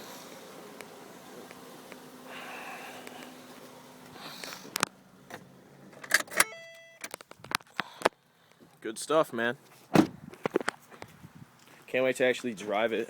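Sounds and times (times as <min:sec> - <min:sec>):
sharp clicks and clunks: 0:04.8 - 0:08.2
brief chime: 0:06.4 - 0:07.0.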